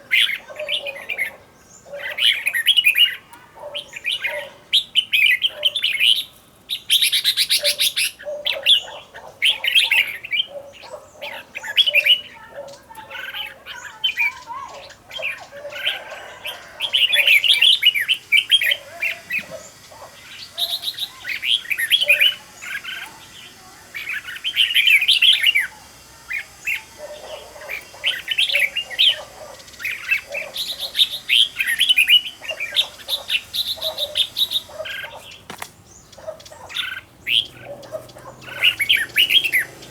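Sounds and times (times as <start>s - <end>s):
birds singing chirpy phrases: 0.0s - 39.9s.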